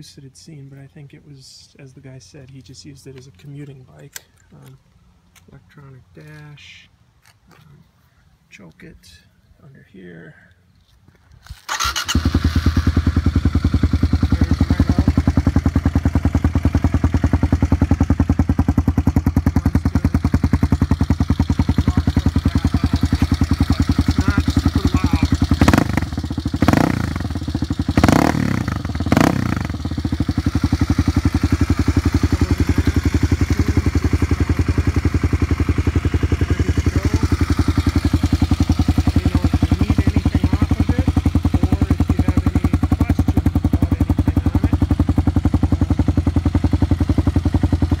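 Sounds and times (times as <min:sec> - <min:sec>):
motorcycle engine revving and idling: 0:11.6 - 0:48.0.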